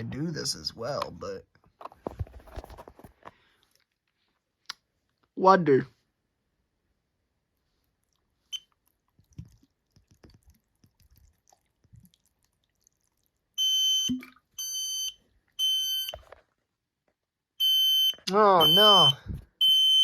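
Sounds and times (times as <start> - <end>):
loud high alarm beeps: 17.6 - 20.0.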